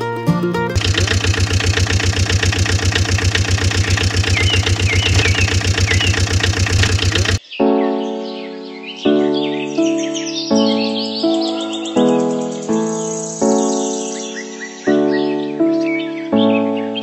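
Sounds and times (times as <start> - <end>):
engine idling chugging: 0.8 - 7.4
bird chirps: 0.8 - 17.0.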